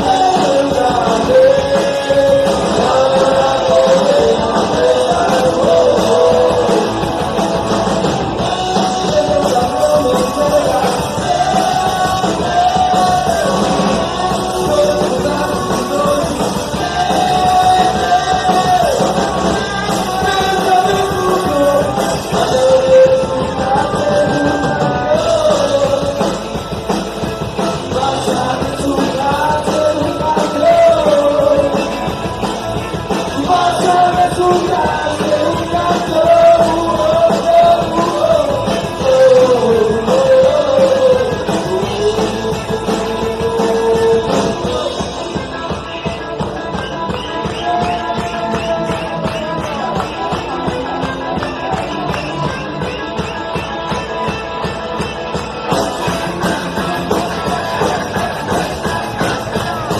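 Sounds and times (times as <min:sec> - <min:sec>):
person singing: 0:00.0 - 0:07.4, 0:08.4 - 0:26.7, 0:27.6 - 0:46.0
loud electric guitar: 0:00.0 - 0:59.9
punk rock band playing: 0:00.0 - 0:59.9.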